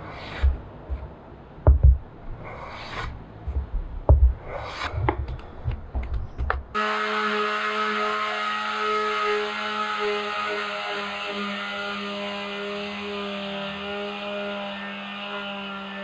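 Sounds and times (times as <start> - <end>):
power tool motor humming: 6.8 - 16.0.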